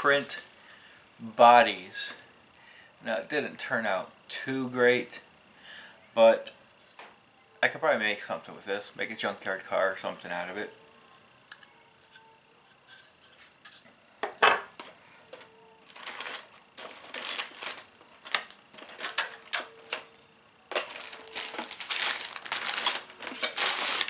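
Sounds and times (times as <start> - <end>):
plastic parts clicking and clattering: 14.8 - 20.1, 20.7 - 24.0.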